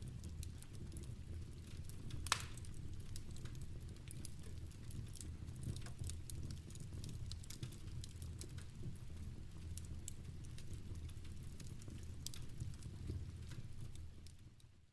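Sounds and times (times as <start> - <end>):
rain patter: 0.0 - 14.9
wood fire crackling: 0.0 - 14.9
sharp fire pops: 2.2 - 2.8.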